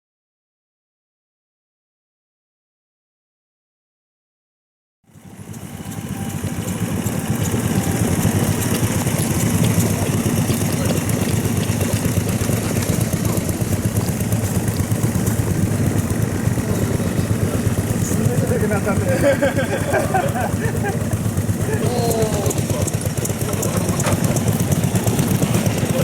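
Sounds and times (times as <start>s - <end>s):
diesel tractor engine running: 5.1s - 26.0s.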